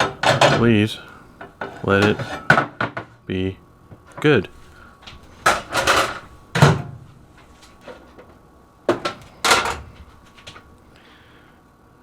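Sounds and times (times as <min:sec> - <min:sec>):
microwave door and tray clunking: 0:00.0 - 0:00.8, 0:05.0 - 0:07.1, 0:08.9 - 0:10.6.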